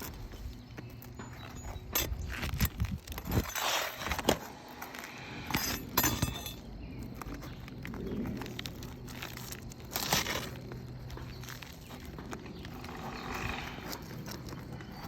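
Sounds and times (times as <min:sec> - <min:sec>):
metal tool scraping roof shingles: 0:01.6 - 0:06.7
sharp metal clinks: 0:05.5 - 0:06.8.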